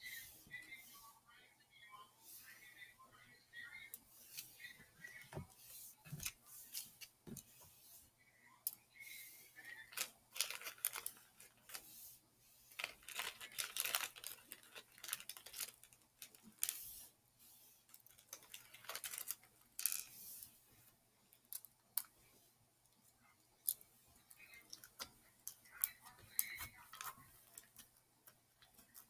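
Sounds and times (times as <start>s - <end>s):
plastic items clicking and rustling: 9.8s - 11.8s, 12.7s - 16.9s, 17.9s - 20.1s, 23.6s - 29.0s.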